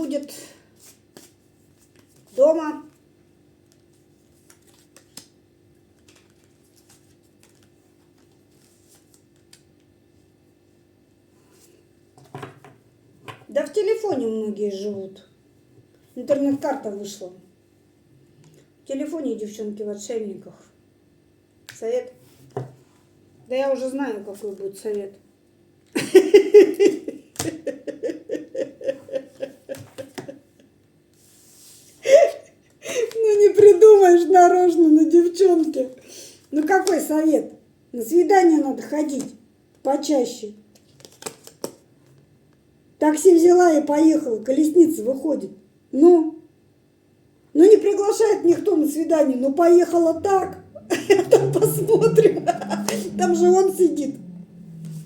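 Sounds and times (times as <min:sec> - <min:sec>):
woman laughing: 0:26.0 - 0:30.6, 0:32.0 - 0:33.2, 0:50.0 - 0:54.3
cards clicking and tapping: 0:41.0 - 0:41.8
low steady hum: 0:47.7 - 0:55.0
brief vocal sound: 0:49.8 - 0:55.0.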